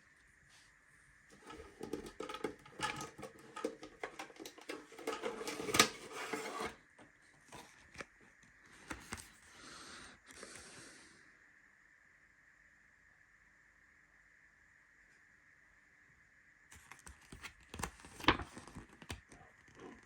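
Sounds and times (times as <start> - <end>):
hands handling objects: 1.4 - 6.8.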